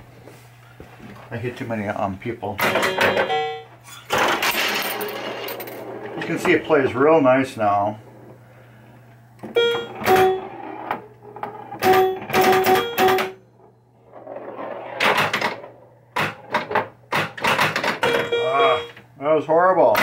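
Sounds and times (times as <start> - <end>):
electrical hum: 0.0 - 20.0
pinball flippers clacking: 2.6 - 6.6, 9.6 - 13.7, 14.4 - 19.0
short electronic tones: 9.6 - 10.5, 18.0 - 19.0.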